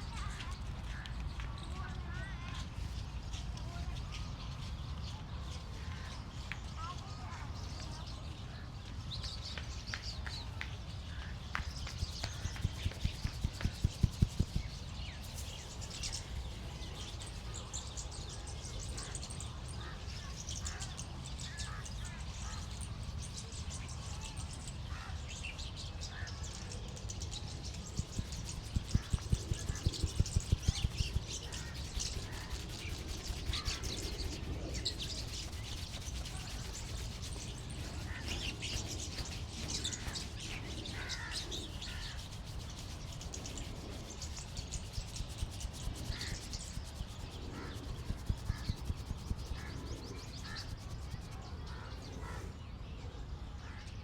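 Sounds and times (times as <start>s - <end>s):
birds chirping: 0.0s - 54.0s
hands slapping rhythmically: 11.5s - 14.7s, 27.9s - 37.3s
hands rubbing head: 11.8s - 16.2s, 27.8s - 51.3s.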